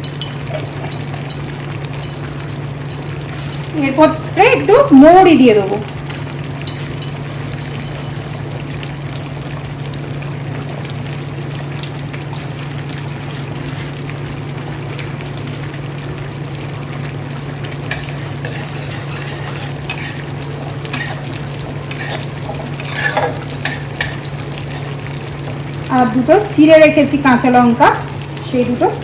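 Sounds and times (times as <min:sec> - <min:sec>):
ghee sizzling in a pan: 0:00.0 - 0:29.0
spoon scraping pan: 0:06.8 - 0:08.9, 0:12.4 - 0:14.0, 0:17.9 - 0:25.2.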